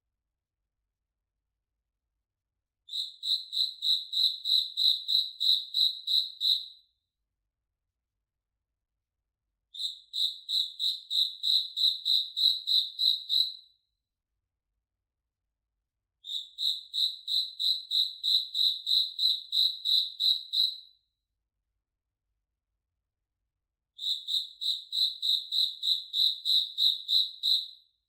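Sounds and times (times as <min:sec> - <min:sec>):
cricket chirping: 0:02.9 - 0:06.7, 0:09.8 - 0:13.7, 0:16.2 - 0:20.9, 0:24.0 - 0:27.8.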